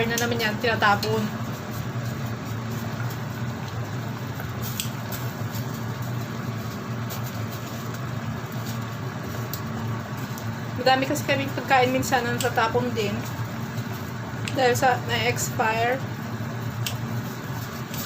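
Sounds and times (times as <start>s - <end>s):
pot boiling with bubbling hiss: 0.0s - 18.0s.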